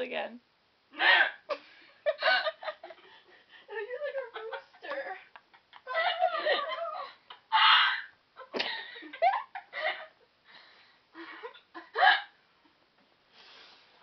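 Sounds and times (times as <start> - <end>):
person giggling: 8.4 - 10.2.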